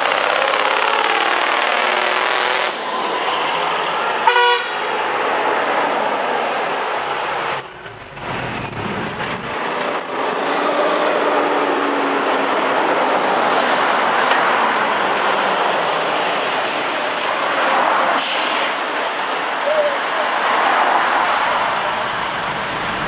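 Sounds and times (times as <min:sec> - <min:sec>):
steady vehicle noise: 0:00.0 - 0:23.0.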